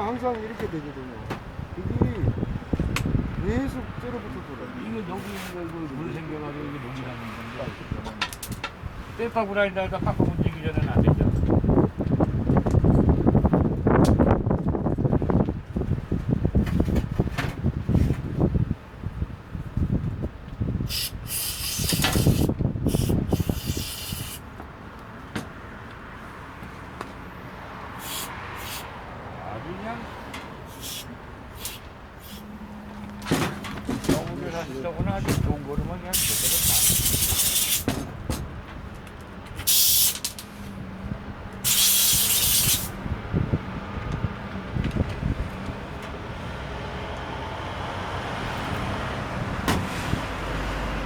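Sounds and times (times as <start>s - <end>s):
hissing spray bursts: 20.9s - 24.4s, 28.0s - 28.9s, 30.6s - 32.6s, 36.1s - 37.9s, 39.6s - 40.5s, 41.6s - 42.9s.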